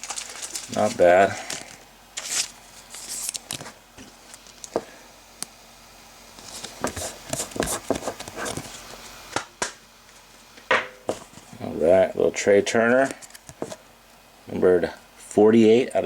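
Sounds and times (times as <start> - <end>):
trading cards tapping and rustling: 6.4 - 8.7.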